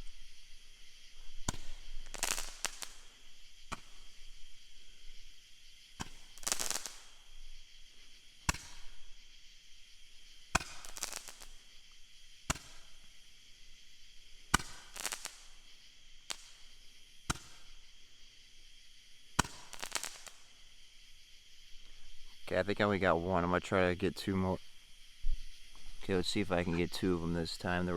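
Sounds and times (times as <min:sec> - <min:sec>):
firework crackle: 0:00.0 - 0:21.8
firework shots popping: 0:01.4 - 0:07.6, 0:08.3 - 0:09.4, 0:10.2 - 0:18.2, 0:19.2 - 0:20.8.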